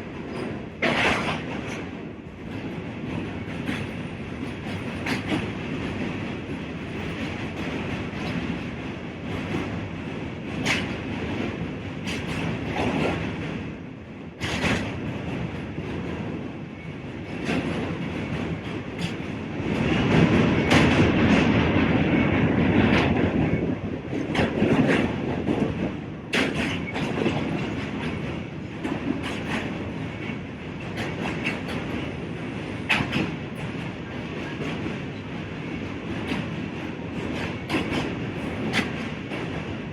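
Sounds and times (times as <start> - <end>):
subway train rumbling: 0.0 - 39.9
wheels clacking over rail joints: 0.2 - 1.9, 22.8 - 39.8.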